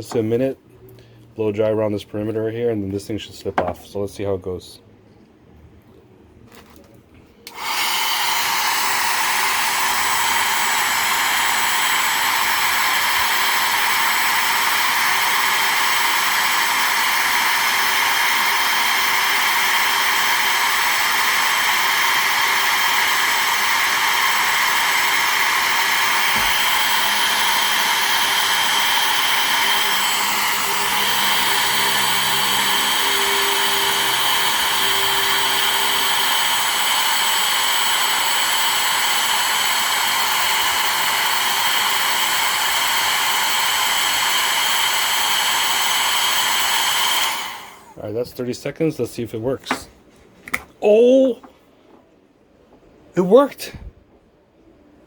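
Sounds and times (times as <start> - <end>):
blow dryer running: 7.5 - 48.0.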